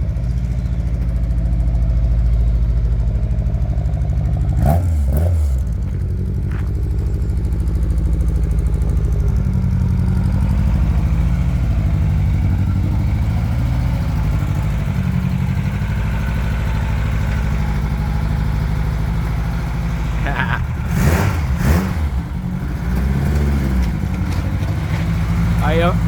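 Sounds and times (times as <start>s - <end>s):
car engine idling: 0.0s - 26.0s.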